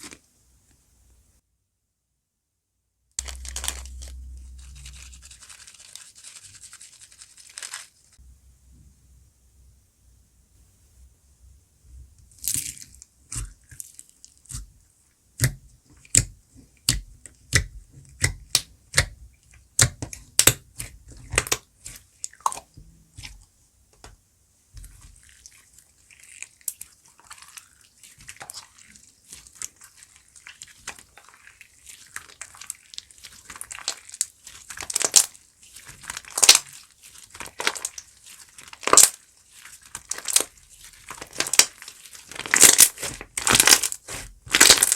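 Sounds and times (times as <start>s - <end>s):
slime popping and squishing: 3.2s - 5.9s, 15.4s - 23.4s, 26.1s - 44.9s.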